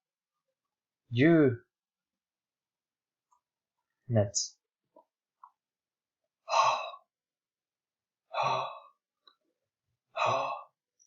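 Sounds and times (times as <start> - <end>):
man breathing out h sounds: 8.3 - 9.0.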